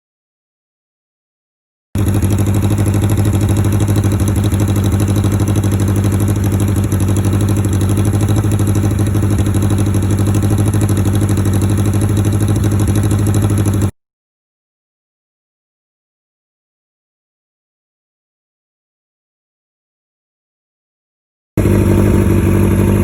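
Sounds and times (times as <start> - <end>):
motorcycle engine idling: 2.0 - 14.0, 21.6 - 23.0.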